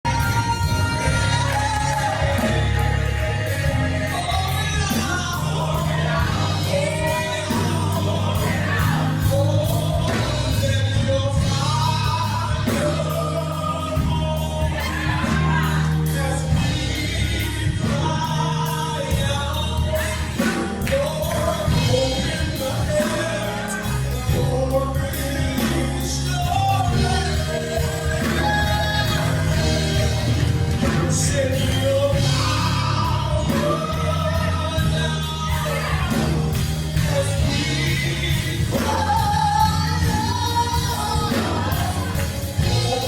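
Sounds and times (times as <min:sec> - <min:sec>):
bass and drums: 0:00.0 - 0:43.0
gospel singing: 0:00.0 - 0:43.0.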